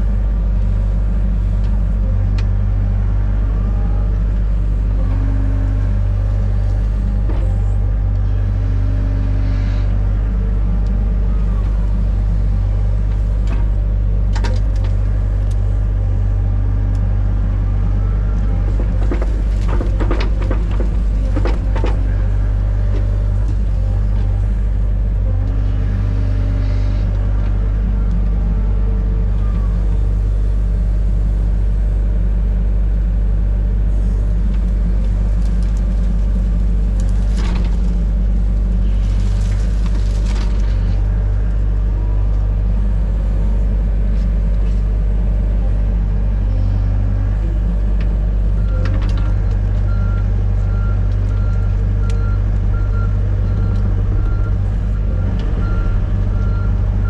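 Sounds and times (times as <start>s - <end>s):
diesel engine running: 0.0s - 57.0s
cracking and scraping: 18.3s - 24.8s, 34.4s - 41.1s.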